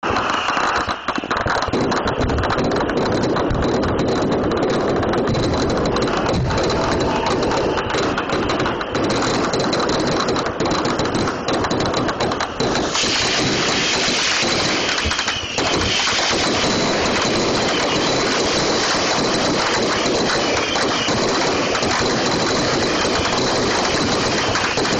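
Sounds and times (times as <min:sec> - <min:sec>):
fireworks bangs and crackles: 0:00.0 - 0:24.9
bright hiss: 0:12.5 - 0:24.9.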